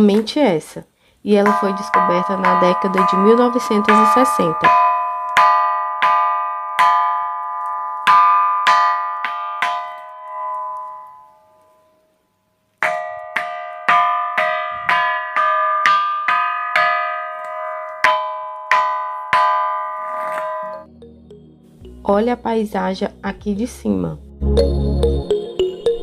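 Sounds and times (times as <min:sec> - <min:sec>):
ringing rock struck: 0:12.8 - 0:20.9.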